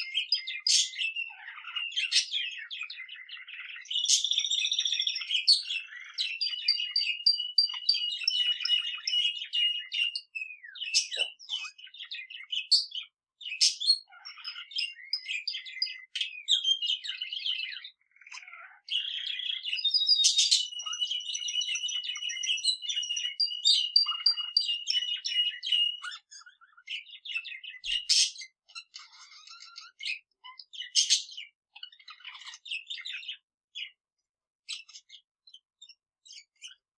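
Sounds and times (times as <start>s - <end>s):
canary and budgerigar singing: 0.0s - 36.9s
quick bird chirps and warbling: 19.8s - 34.0s.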